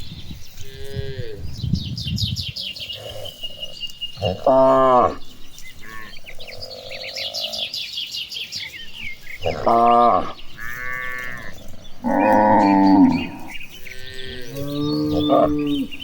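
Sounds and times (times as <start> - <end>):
birds chirping: 0.0 - 16.0
cattle mooing: 4.2 - 5.2, 9.4 - 16.0.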